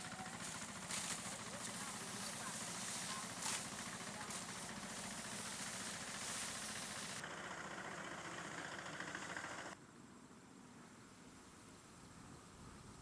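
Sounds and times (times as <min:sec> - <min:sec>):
small engine running: 0:00.0 - 0:09.8.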